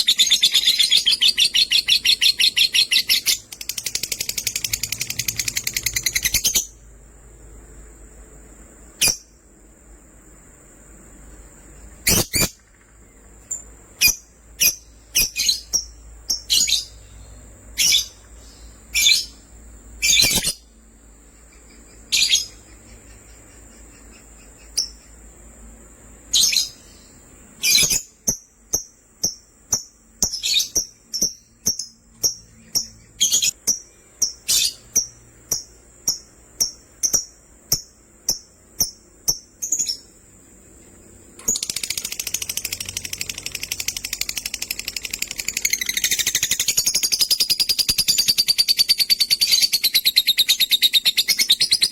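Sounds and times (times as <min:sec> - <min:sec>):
parrots chirping: 0:00.0 - 0:06.8, 0:12.0 - 0:12.7, 0:13.5 - 0:19.4, 0:20.0 - 0:20.7, 0:21.3 - 0:25.2, 0:26.3 - 0:28.3, 0:30.2 - 0:37.3, 0:41.4 - 0:51.9.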